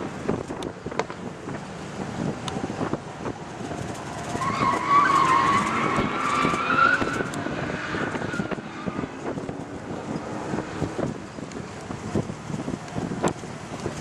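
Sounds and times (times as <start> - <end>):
car rumbling: 0.0 - 14.0
high squeal rising in pitch: 4.2 - 9.2.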